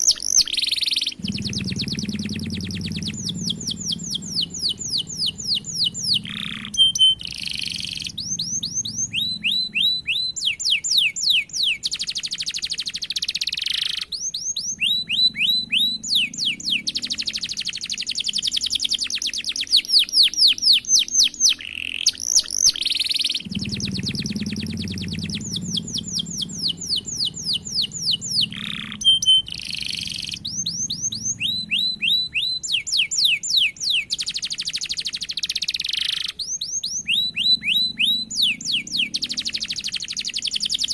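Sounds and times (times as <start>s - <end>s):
canary singing with trills: 0.0s - 40.9s.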